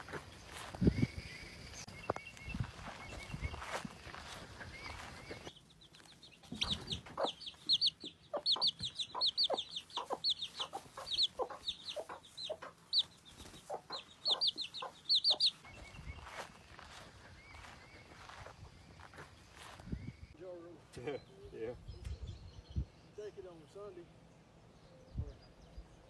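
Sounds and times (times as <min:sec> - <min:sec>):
chickens clucking: 0:00.0 - 0:19.9.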